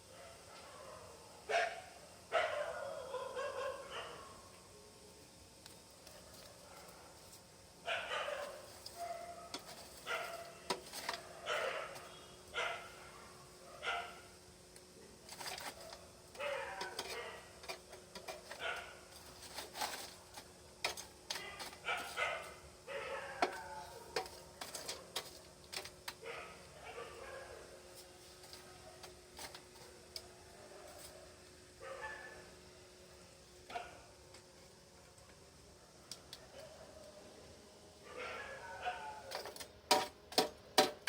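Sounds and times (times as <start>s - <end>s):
dog barking: 0.1s - 4.4s, 7.8s - 14.3s, 15.7s - 17.5s, 18.5s - 19.0s, 21.4s - 24.2s, 26.2s - 27.7s, 31.8s - 32.5s, 33.7s - 34.1s, 38.0s - 39.4s.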